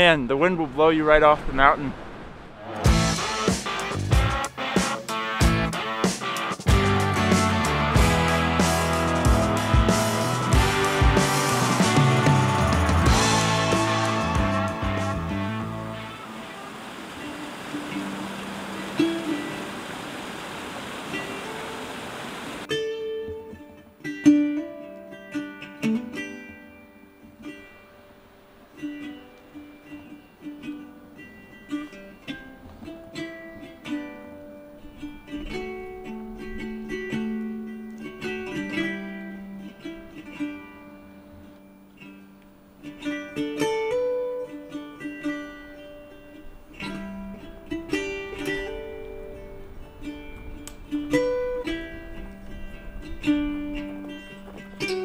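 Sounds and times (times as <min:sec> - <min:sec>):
plucked-string melody: 0:02.7 - 0:55.0.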